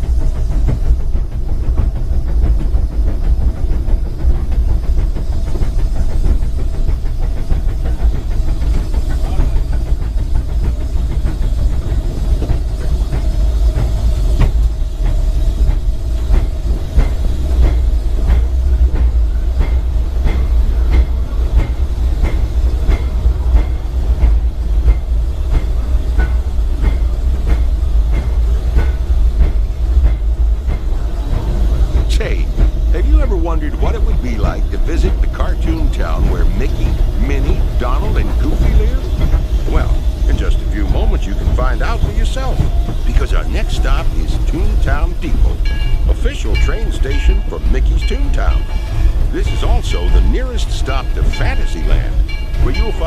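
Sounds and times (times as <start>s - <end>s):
low rumble of moving train: 0.0s - 53.0s
regular clicking of train: 0.0s - 53.0s.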